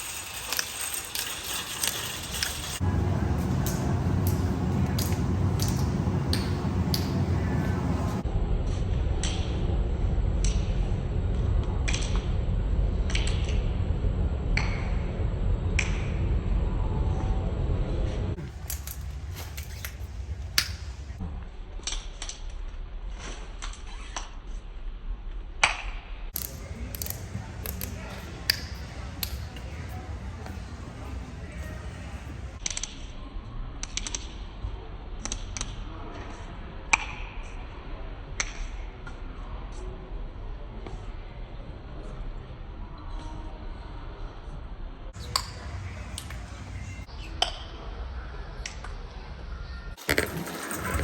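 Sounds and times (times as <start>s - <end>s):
low steady rumble: 1.4s - 21.5s, 26.4s - 32.6s.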